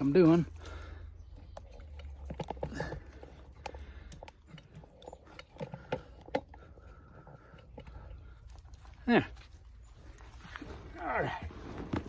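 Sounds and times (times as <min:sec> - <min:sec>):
hands rustling in potting soil: 0:07.6 - 0:12.0.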